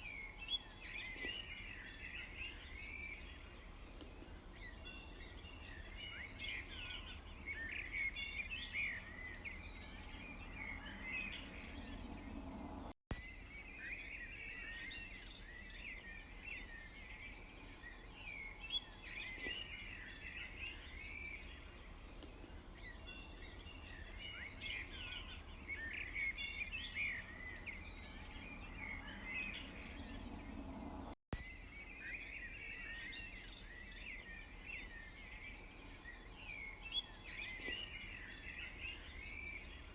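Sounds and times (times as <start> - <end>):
songbirds chirping and twittering: 0.0 - 39.9
low steady background rumble: 0.1 - 12.9, 20.9 - 31.2.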